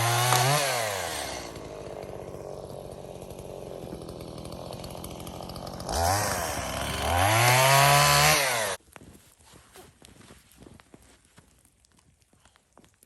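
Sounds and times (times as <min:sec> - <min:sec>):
chainsaw idling and revving: 0:00.0 - 0:08.8.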